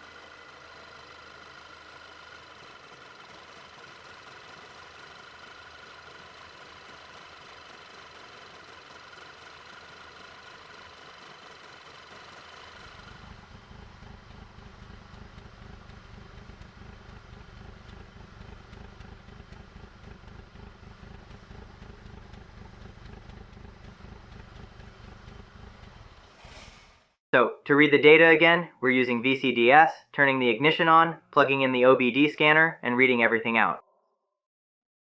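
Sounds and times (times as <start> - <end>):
car engine idling rough: 0.0 - 26.4.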